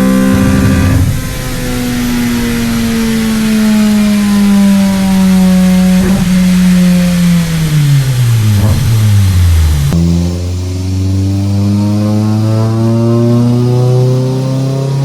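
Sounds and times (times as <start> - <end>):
exhaust pops: 0.0 - 11.3
engine revving on a dyno: 0.0 - 15.0.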